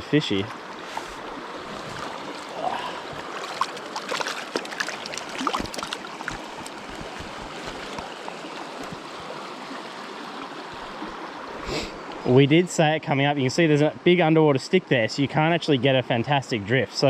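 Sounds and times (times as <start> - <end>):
stream water flowing: 0.0 - 15.8
small splashes and clicks: 3.1 - 9.0.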